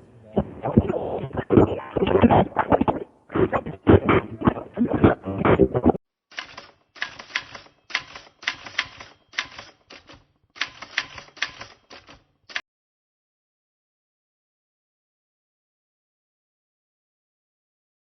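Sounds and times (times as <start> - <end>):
person speaking: 0.0 - 6.0
rapid keyboard typing clicks: 6.3 - 12.6.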